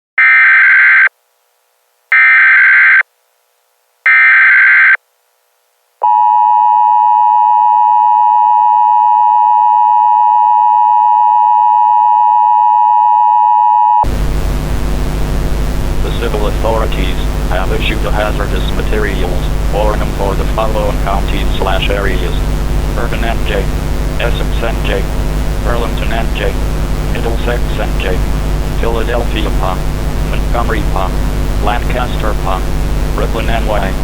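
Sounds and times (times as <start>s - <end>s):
screeching data tones: 2.1s - 3.0s, 4.1s - 5.0s
static hiss: 14.0s - 34.0s
person reading aloud: 16.0s - 22.4s, 23.0s - 28.2s, 28.8s - 32.6s, 33.2s - 34.0s.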